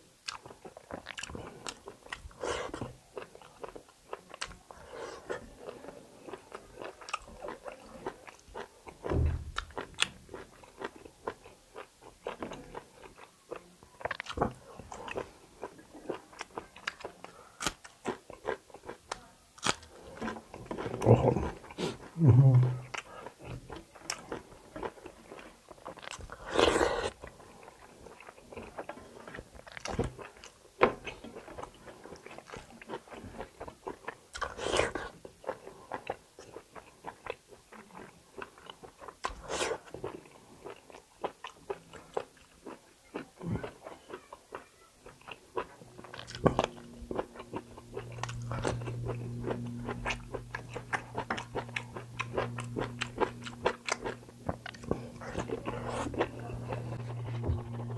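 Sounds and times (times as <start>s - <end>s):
chewing and mouth clicks: 0.2s - 22.2s, 22.8s - 57.9s
low steady hum: 45.6s - 57.9s.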